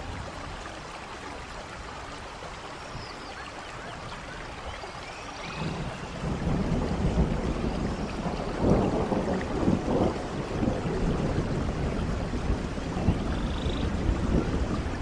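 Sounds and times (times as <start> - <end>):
rain falling: 0.0 - 15.0
low rolling thunder: 5.4 - 15.0.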